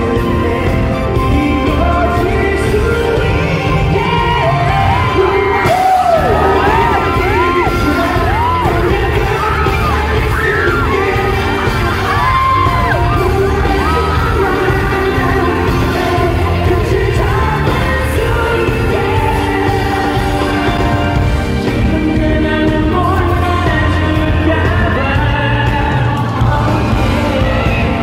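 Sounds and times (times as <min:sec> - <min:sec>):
pop song over sound system: 0:00.0 - 0:28.0
crowd shouting: 0:04.0 - 0:21.2.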